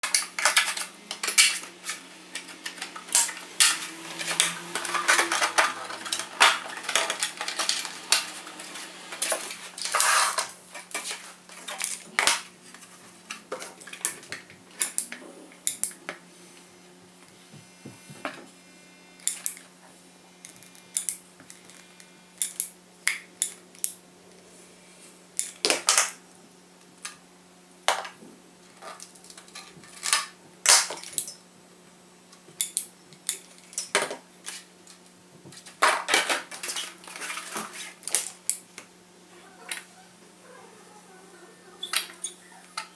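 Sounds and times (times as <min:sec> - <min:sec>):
tools clattering on workbench: 0:00.0 - 0:15.0, 0:35.5 - 0:38.3.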